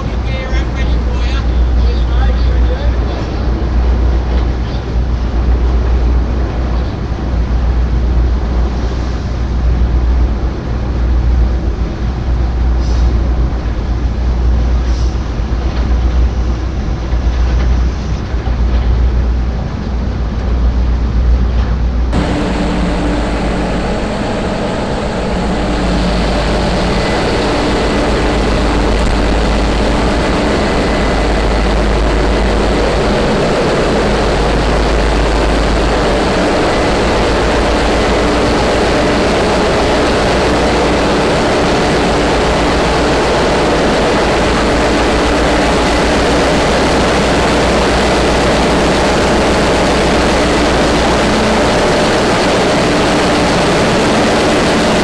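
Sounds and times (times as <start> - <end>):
heavy machinery running: 22.2 - 55.0.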